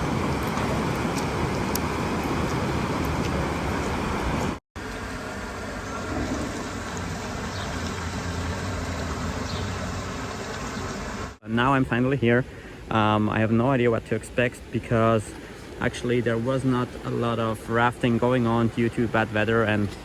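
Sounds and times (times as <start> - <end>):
river water rushing: 0.0 - 11.4.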